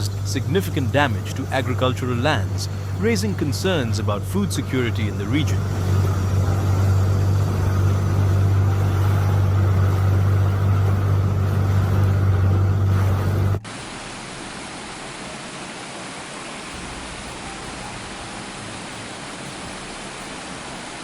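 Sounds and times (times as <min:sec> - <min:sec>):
loud motor hum: 0:00.0 - 0:15.4
water flowing: 0:00.0 - 0:21.0.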